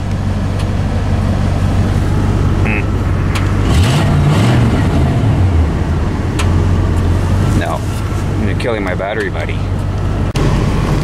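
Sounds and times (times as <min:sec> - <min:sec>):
truck engine idling and revving: 0:00.0 - 0:11.0.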